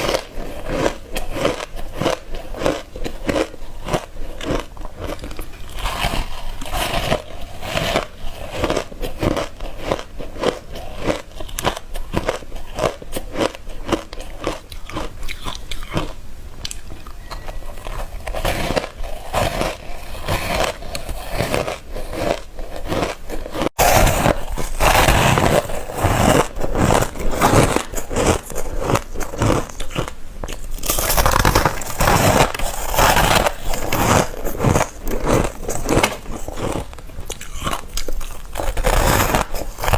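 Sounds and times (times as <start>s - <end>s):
biting into ice crunches: 17.4s - 39.9s.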